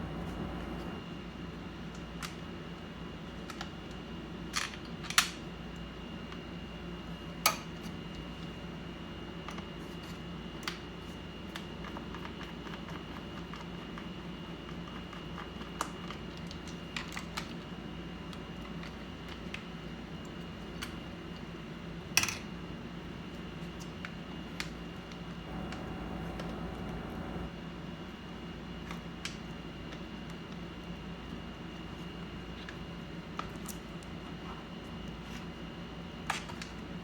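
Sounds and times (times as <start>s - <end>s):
faint high whine: 0.0s - 1.0s, 25.5s - 27.5s
steady background hum: 0.0s - 1.0s, 25.5s - 27.5s.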